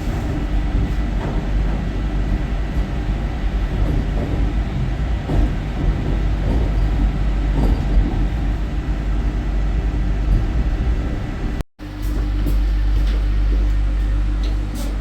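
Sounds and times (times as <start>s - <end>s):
train wheels rumbling on track: 0.0s - 15.0s.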